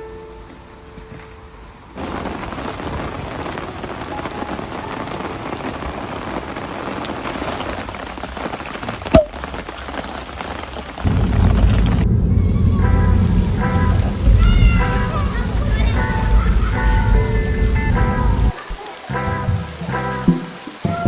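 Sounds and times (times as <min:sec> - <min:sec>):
heavy rain falling: 0:01.8 - 0:21.0
sharp knock: 0:09.2 - 0:09.4
deep low rumble: 0:11.1 - 0:18.6.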